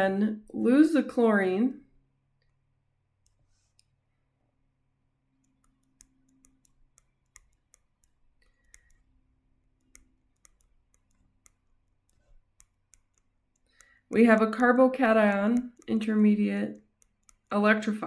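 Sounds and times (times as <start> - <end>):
faint irregular clicks: 2.3 - 2.6, 3.2 - 4.0, 5.3 - 18.0.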